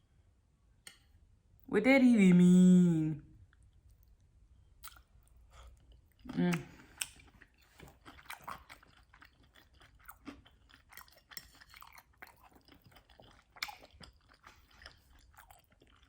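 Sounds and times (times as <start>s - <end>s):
wet chewing clicks and crunches: 3.5s - 16.0s.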